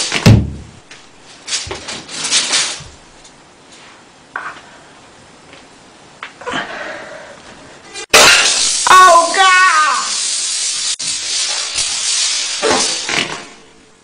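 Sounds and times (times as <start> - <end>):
clattering rustling noises: 0.0 - 4.7
loud thump: 0.2 - 0.8.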